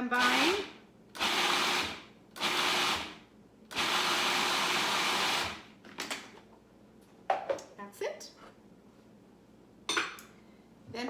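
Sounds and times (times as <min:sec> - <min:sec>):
food processor motor pulsing: 0:00.2 - 0:05.7.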